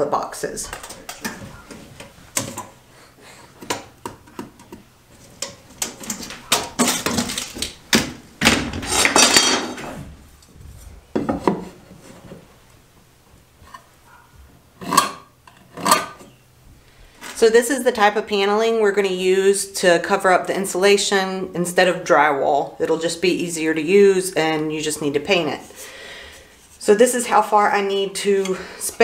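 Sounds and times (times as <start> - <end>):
hand tools clicking and rattling: 0.7 - 2.8, 3.5 - 8.1, 8.9 - 9.8
scraping and clatter: 4.6 - 7.9, 8.8 - 10.1.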